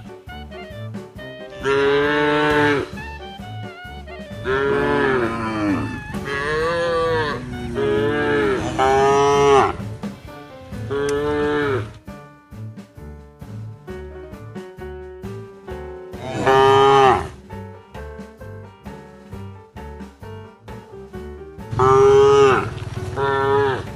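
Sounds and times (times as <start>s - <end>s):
background music with steady beat: 0.0s - 23.9s
cattle mooing: 1.6s - 3.0s, 4.3s - 9.9s, 10.9s - 12.0s, 16.2s - 17.4s, 21.7s - 23.9s.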